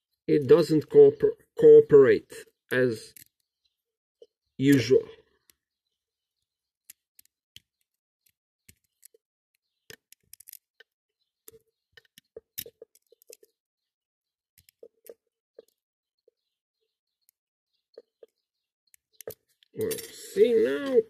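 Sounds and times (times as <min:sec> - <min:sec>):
lock pick clicking and scraping: 0:06.8 - 0:13.6, 0:18.2 - 0:20.1.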